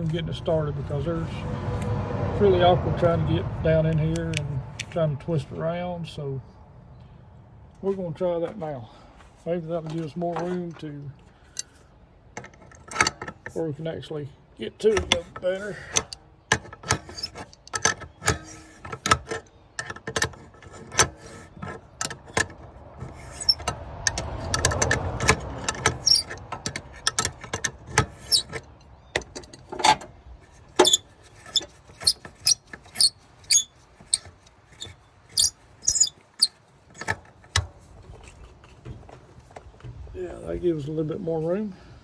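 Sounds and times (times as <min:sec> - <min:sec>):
scraping rustle: 0:07.8 - 0:13.8, 0:14.8 - 0:41.7
tools clicking and knocking: 0:12.4 - 0:13.6, 0:14.9 - 0:40.0
short squeaks: 0:15.2 - 0:38.7.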